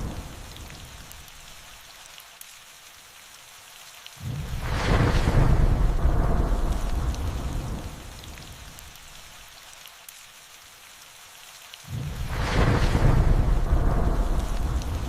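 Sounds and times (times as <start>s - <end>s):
raindrop ticks: 0.0s - 2.8s, 3.8s - 10.5s, 11.4s - 15.0s
steady rain falling: 0.0s - 15.0s
thunder rumbling: 4.2s - 8.6s, 11.9s - 15.0s.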